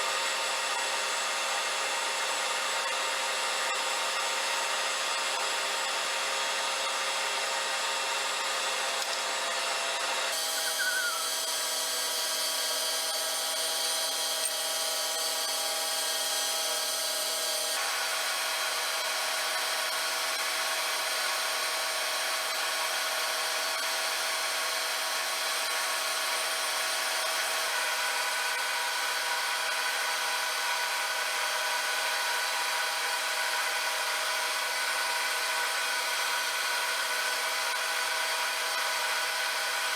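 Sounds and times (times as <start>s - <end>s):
machine tool cutting metal: 10.3s - 15.7s.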